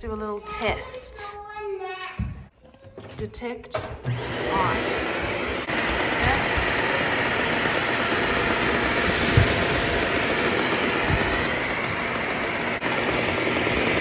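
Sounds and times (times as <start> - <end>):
upright vacuum running: 3.7 - 14.0.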